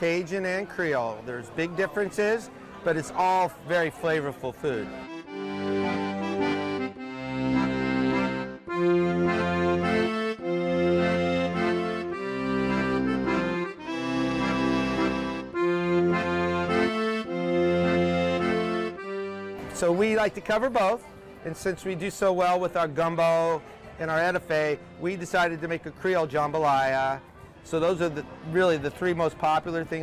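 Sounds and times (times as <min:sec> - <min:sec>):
accordion chords: 0:00.0 - 0:30.0
steady bass: 0:05.3 - 0:19.6.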